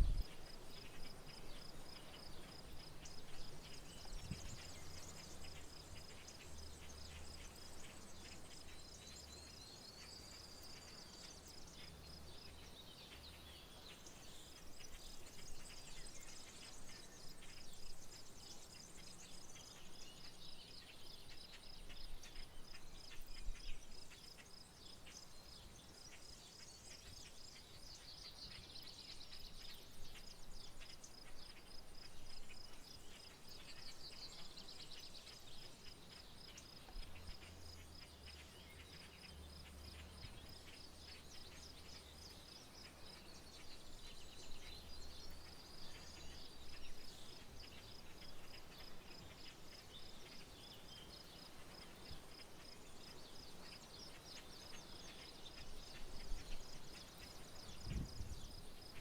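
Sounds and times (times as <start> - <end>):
songbirds chirping and whistling: 0.0 - 59.0.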